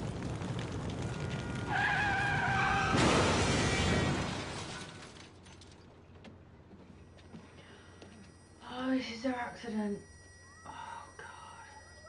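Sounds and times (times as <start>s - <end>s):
car crash: 0.0s - 5.9s.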